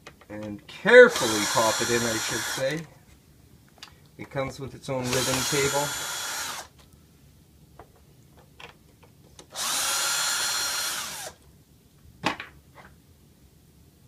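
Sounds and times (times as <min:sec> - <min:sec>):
power drill-driver running: 0:01.1 - 0:02.8, 0:05.0 - 0:06.7, 0:09.5 - 0:11.4.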